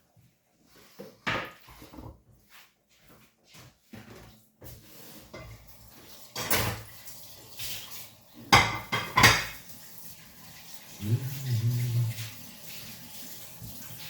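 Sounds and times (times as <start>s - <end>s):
pots and dishes clattering: 0.9s - 2.3s, 4.0s - 9.7s.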